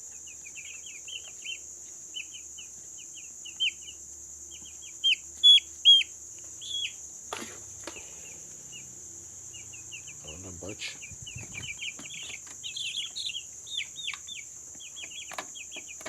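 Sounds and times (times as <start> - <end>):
chicks peeping: 0.0 - 16.0
high insect trill: 0.0 - 16.0.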